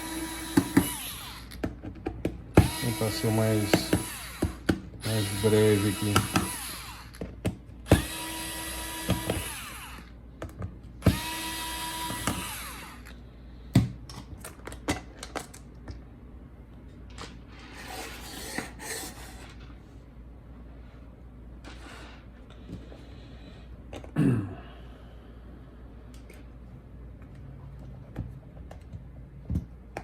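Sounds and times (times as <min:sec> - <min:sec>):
electric screwdriver whining: 0:00.0 - 0:01.6, 0:02.6 - 0:07.3, 0:07.9 - 0:10.1, 0:11.0 - 0:13.2.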